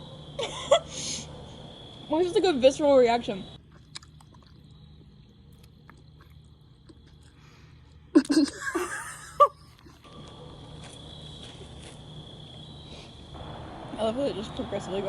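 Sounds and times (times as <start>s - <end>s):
crickets chirring: 0.0s - 15.0s
low background hum: 0.0s - 15.0s.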